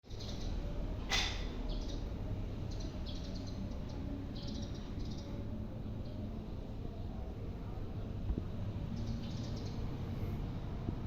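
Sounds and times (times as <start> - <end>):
birds chirping: 0.1 - 6.4, 8.8 - 10.3.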